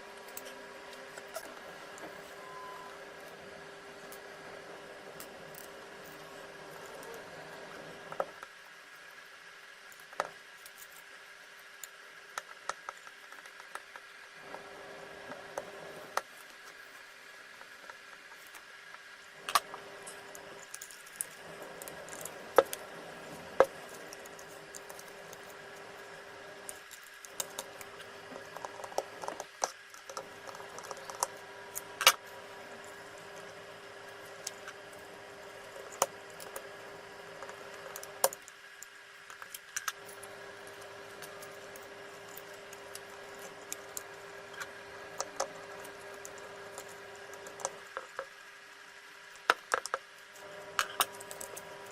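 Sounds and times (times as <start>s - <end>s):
faint steady hum: 0.0s - 51.9s.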